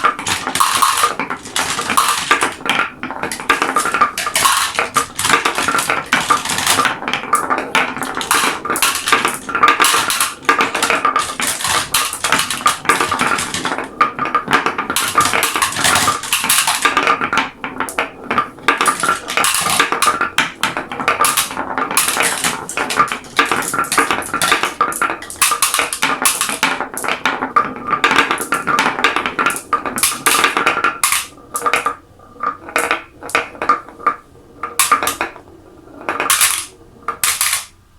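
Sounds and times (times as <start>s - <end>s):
marbles clicking: 0.0s - 37.8s
marbles rolling rattle: 0.0s - 37.8s.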